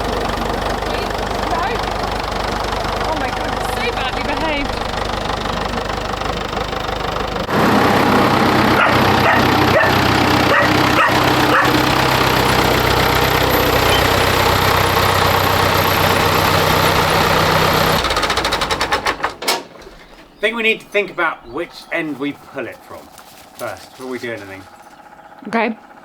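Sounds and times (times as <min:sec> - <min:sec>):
tractor engine running: 0:00.0 - 0:26.0
dog barking: 0:08.7 - 0:11.8.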